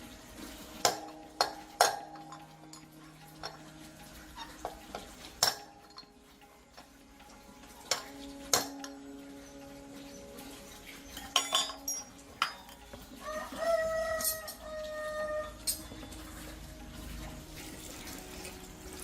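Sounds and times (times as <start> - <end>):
metal objects clinking: 0.6 - 16.6.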